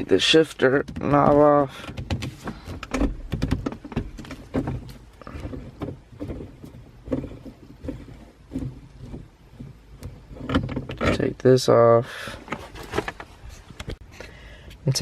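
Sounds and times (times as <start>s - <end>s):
plastic trim clicks and knocks: 0.7s - 6.5s.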